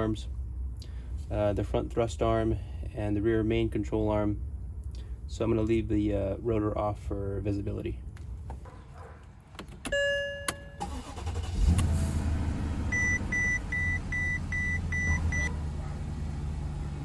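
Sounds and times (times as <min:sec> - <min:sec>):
car engine starting and idling: 0:09.5 - 0:17.0.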